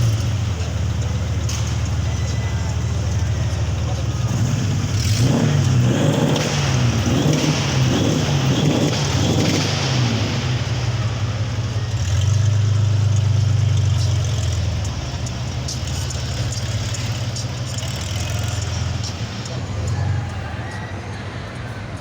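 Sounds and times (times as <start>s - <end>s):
car engine rumbling: 0.0s - 22.0s.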